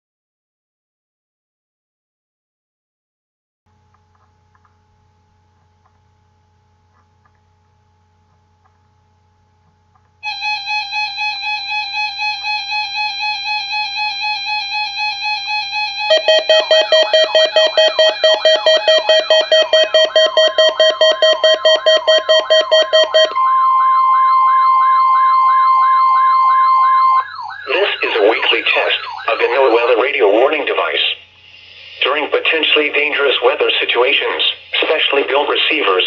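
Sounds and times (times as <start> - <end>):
warbling siren-like alarm: 10.2 - 32.2
steady high warning tone: 10.2 - 36.0
pulsing electronic tone: 14.2 - 30.0.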